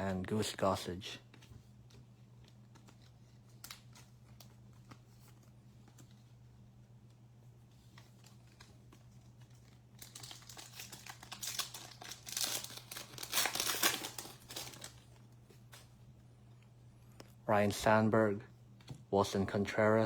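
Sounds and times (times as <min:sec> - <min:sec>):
card pack wrapper crinkling: 0:09.4 - 0:15.9.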